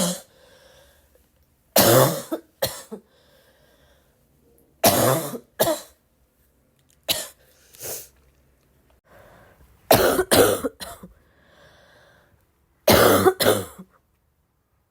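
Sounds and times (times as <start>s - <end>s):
woman coughing: 0.0s - 0.3s, 1.8s - 3.0s, 4.8s - 6.0s, 9.9s - 11.1s, 12.9s - 13.9s
woman breathing in: 0.3s - 1.2s, 3.1s - 4.2s, 9.1s - 9.6s, 11.2s - 12.4s.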